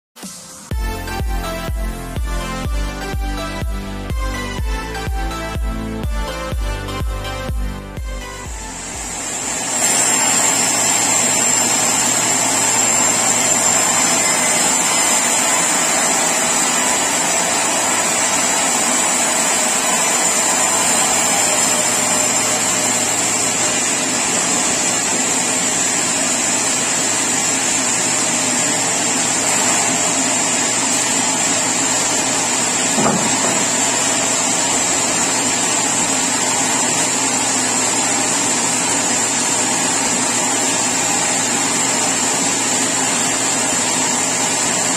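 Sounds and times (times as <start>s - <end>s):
sawmill saw whining: 0.2s - 44.9s
brief knock: 33.0s - 33.8s.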